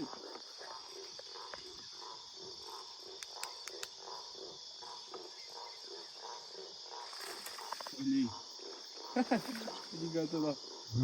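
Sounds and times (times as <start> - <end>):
crickets shrilling: 0.0 - 11.0
sharp clicks: 3.2 - 4.0.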